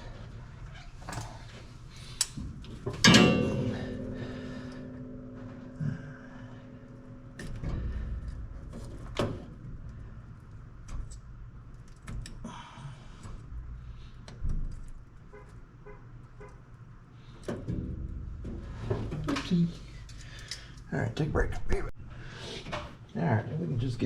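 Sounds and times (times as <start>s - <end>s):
low rumble: 2.4s - 10.9s.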